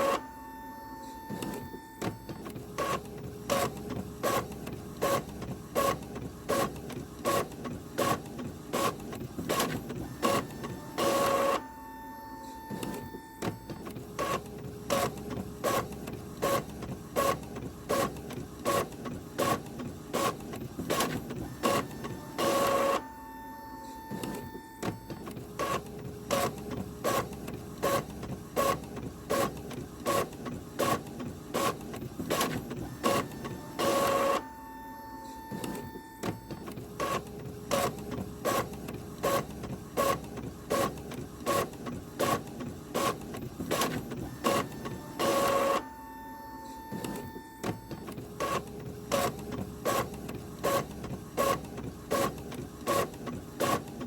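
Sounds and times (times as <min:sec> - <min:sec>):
printer louder burst: 0:31.6 - 0:36.2, 0:43.0 - 0:50.1.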